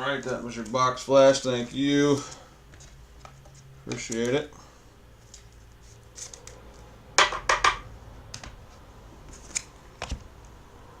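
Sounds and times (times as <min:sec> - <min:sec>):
handling clicks and rustles: 0:02.2 - 0:04.5.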